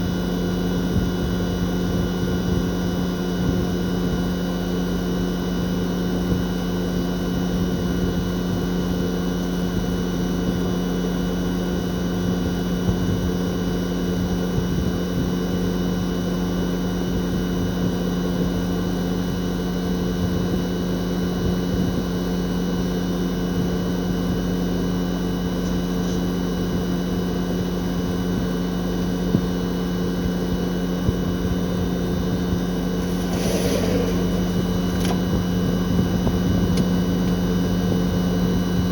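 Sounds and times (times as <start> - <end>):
compressor humming: 31.6 - 38.9.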